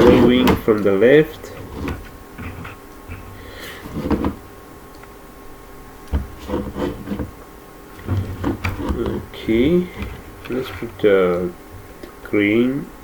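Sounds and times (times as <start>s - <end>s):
blocks knocking and sliding: 0.0s - 4.5s, 6.1s - 7.4s, 8.0s - 11.4s.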